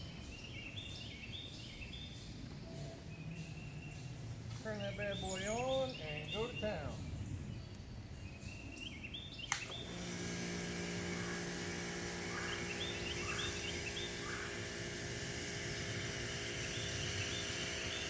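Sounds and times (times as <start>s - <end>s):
birds chirping: 0.0s - 18.0s
pressure washer switch click: 9.5s - 9.8s
pressure washer motor humming: 9.5s - 18.0s
water spray hissing: 9.9s - 18.0s.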